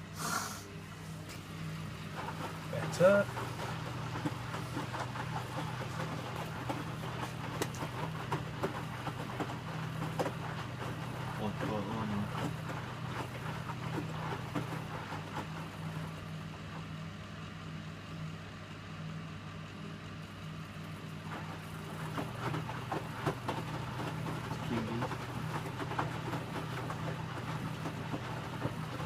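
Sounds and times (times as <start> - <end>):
washing machine motor hum: 0.0 - 29.0
washing machine knocks and clatter: 2.1 - 16.8, 21.2 - 29.0.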